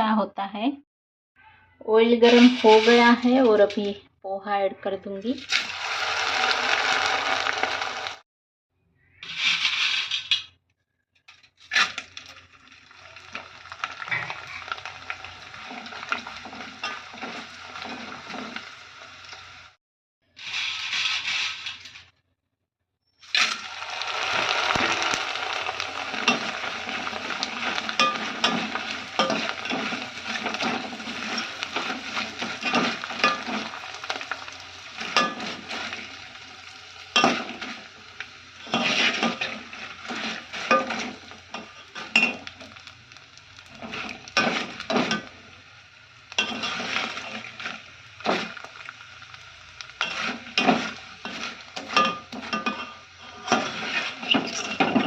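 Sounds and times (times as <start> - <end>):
spatula scraping metal pan: 2.2 - 3.4, 20.4 - 21.9, 24.5 - 36.3, 38.6 - 42.6, 43.8 - 45.3, 46.4 - 48.6, 50.0 - 55.0
rice sizzling in oil: 5.4 - 8.2, 11.7 - 19.8, 23.2 - 55.0.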